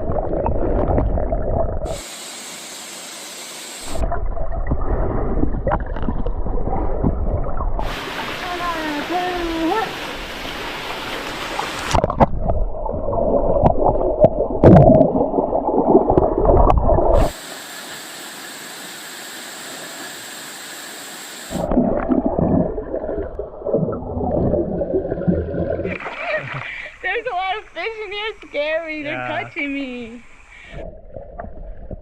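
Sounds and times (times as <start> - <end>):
water gurgling and churning: 0.0 - 2.4, 3.8 - 17.4, 21.5 - 26.9
water splashes: 0.0 - 28.7
rushing water hiss: 1.9 - 4.0, 7.8 - 12.0, 17.2 - 21.7, 25.9 - 30.8.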